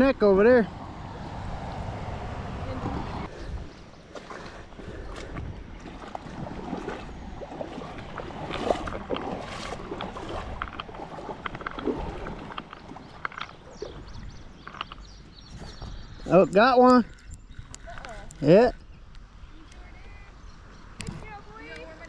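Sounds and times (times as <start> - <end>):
creek water sloshing and gurgling: 0.7 - 18.8
small water splashes: 2.8 - 15.9.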